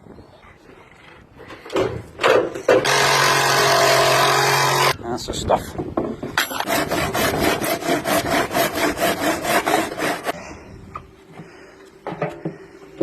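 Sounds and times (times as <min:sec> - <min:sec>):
hand tool scraping back and forth: 0:06.4 - 0:10.4.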